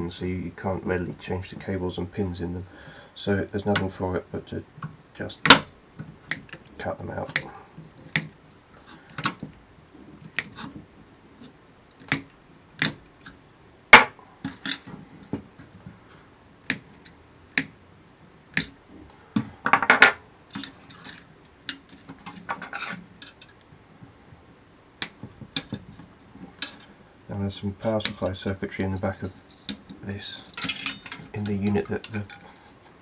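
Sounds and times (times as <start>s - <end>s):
wire cutters snipping wires: 3.6s - 4.0s, 5.4s - 5.7s, 6.3s - 6.7s, 7.3s - 8.4s, 10.3s - 10.8s, 12.0s - 13.4s, 16.7s - 17.0s, 17.6s - 17.8s, 18.5s - 18.8s, 25.0s - 25.8s, 28.0s - 28.3s
wires rustling: 5.4s - 17.8s, 25.0s - 33.0s.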